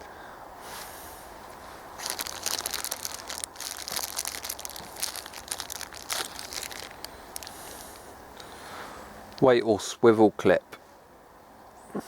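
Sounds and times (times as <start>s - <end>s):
packaging crackling: 2.0s - 8.1s.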